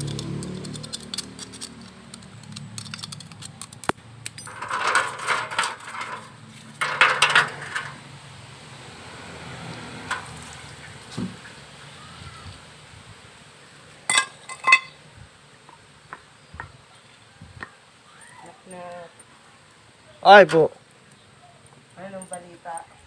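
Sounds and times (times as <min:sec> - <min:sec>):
small metal tools clinking: 0:00.0 - 0:08.0, 0:14.1 - 0:15.0, 0:18.1 - 0:23.0.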